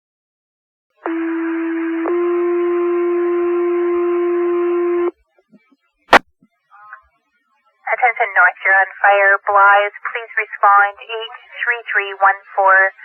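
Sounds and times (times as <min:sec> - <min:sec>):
radio hiss: 0:07.9 - 0:13.0.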